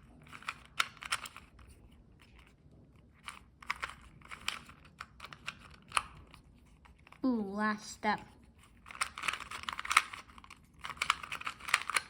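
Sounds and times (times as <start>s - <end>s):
puzzle cube layers clicking: 0.2s - 1.6s, 3.2s - 7.2s, 8.7s - 12.0s.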